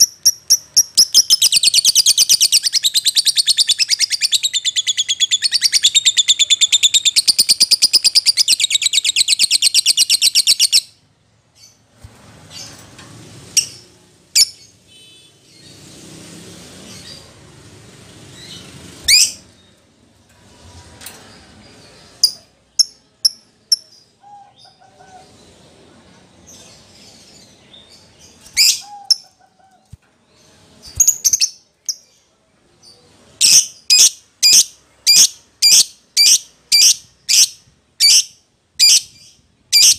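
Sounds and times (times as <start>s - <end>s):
lovebird sharp chirps: 0.0s - 11.0s.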